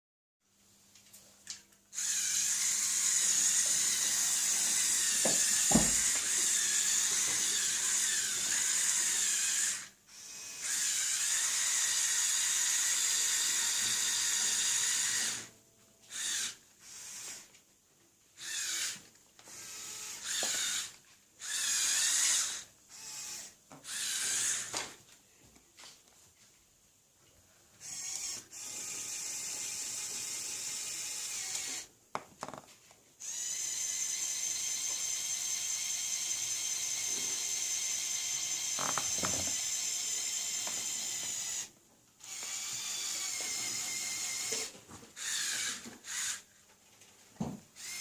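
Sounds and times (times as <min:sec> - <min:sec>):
small electric motors whining: 0:01.9 - 0:15.5, 0:16.1 - 0:17.5, 0:18.4 - 0:24.9, 0:27.8 - 0:32.6, 0:33.2 - 0:46.5, 0:47.8 - 0:48.0
plastic gears turning: 0:02.0 - 0:15.5, 0:18.4 - 0:24.9, 0:27.8 - 0:46.5, 0:47.8 - 0:48.0
knock: 0:05.2 - 0:06.0.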